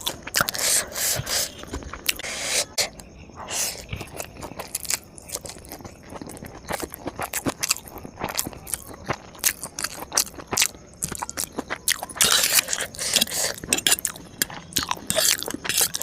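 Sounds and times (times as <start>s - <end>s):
crunchy food chewing: 0.0s - 16.0s.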